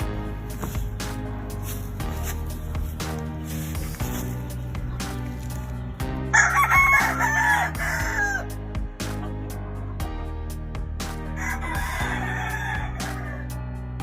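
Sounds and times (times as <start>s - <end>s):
music with a steady beat: 0.0s - 14.0s
rooster crowing: 6.3s - 8.5s, 11.4s - 13.6s.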